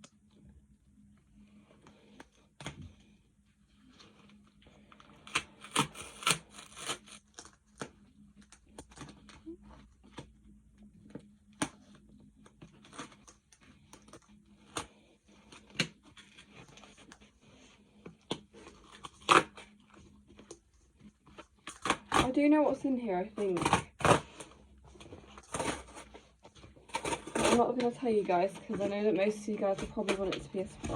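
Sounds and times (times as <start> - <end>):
package tearing and crinkling: 5.2 - 9.4, 18.3 - 20.5, 21.3 - 22.3, 25.3 - 26.2, 26.8 - 28.2.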